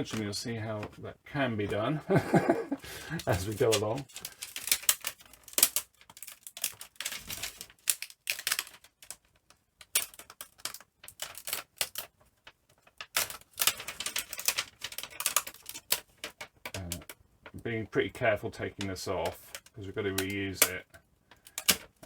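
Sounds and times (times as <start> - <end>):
tools clicking on laptop parts: 2.4 - 17.2, 19.2 - 22.0.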